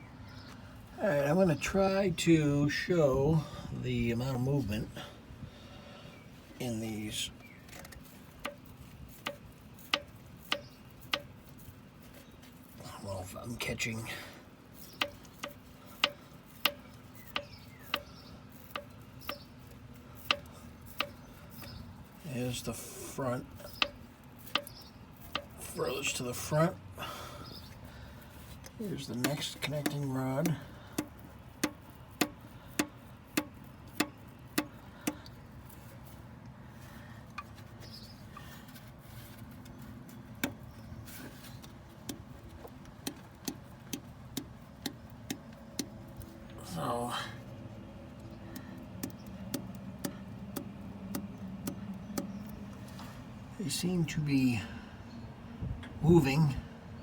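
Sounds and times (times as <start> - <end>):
sharp metallic clicks: 14.8 - 21.8, 23.5 - 26.2, 28.6 - 35.8, 41.6 - 46.6, 48.2 - 52.7.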